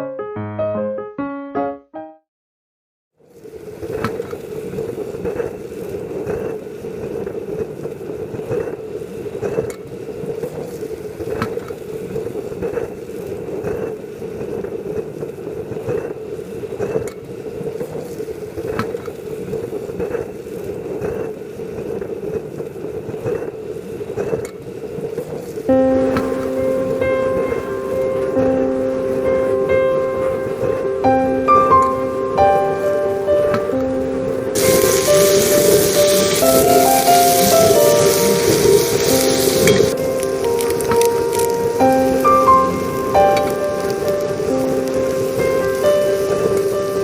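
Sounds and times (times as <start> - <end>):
stove blower rushing: 26.0 - 47.0
sharp ticks or pops: 26.1 - 47.0.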